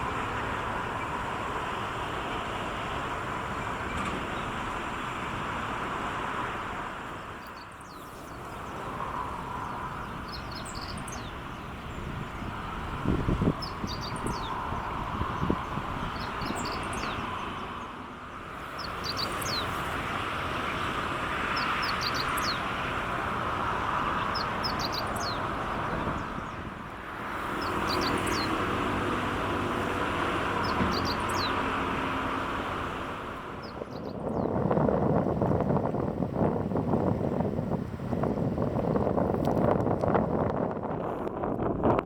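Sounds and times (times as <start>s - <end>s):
small birds chirping: 7.2s - 22.9s, 24.0s - 32.4s, 33.6s - 34.7s.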